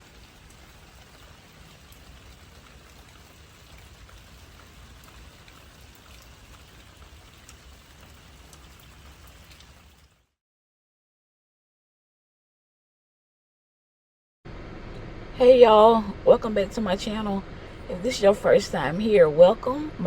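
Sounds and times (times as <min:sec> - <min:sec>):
raindrops ticking on surface: 0:00.0 - 0:10.3
steady rainfall: 0:00.0 - 0:10.3.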